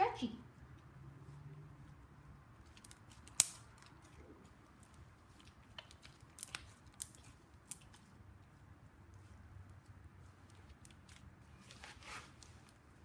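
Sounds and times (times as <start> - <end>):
sticky slime clicks and pops: 2.8 - 3.8.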